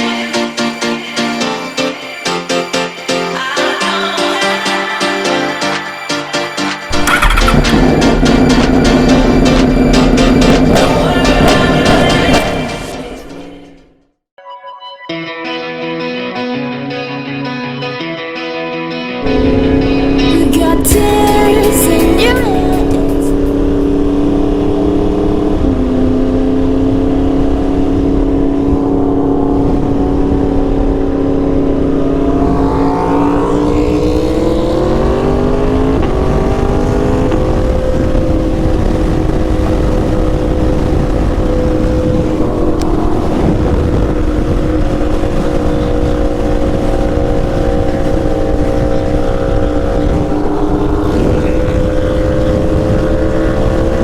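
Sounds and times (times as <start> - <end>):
motorcycle engine running: 6.9 - 14.0, 19.2 - 54.0.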